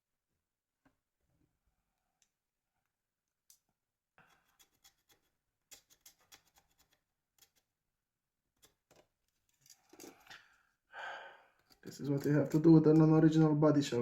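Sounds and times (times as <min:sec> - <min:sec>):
small plastic parts clicking: 0:08.6 - 0:10.5, 0:11.6 - 0:13.2.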